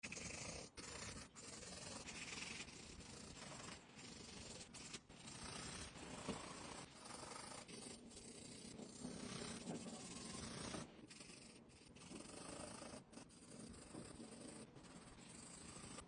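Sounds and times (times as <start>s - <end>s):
pencil scratching on paper: 0.0s - 16.0s.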